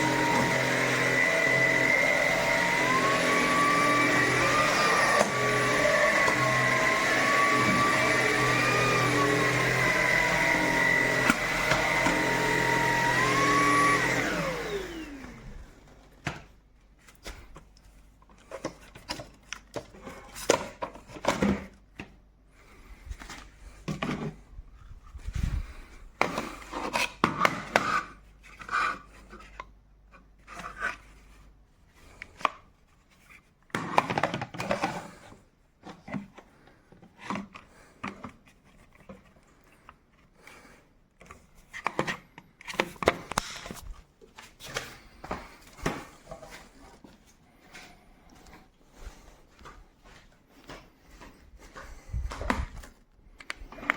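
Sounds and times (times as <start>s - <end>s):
vacuum motor whining: 0.0s - 16.1s, 53.4s - 53.9s.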